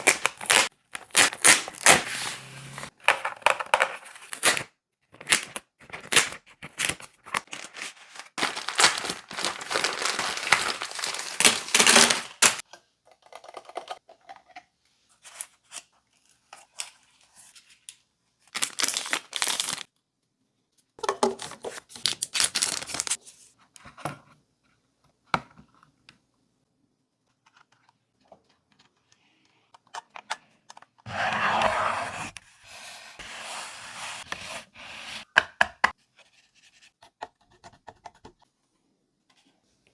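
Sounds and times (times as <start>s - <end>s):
packaging rustling and tearing: 0.0s - 4.6s, 5.3s - 12.6s, 18.6s - 19.9s, 21.9s - 23.2s.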